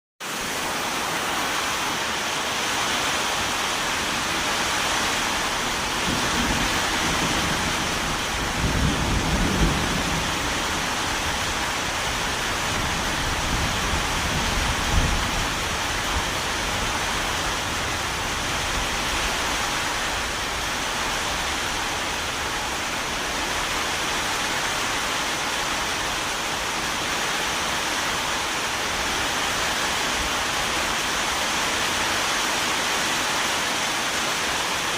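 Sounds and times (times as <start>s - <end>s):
steady rain falling: 0.2s - 34.9s
distant thunder rumbles: 4.6s - 19.6s.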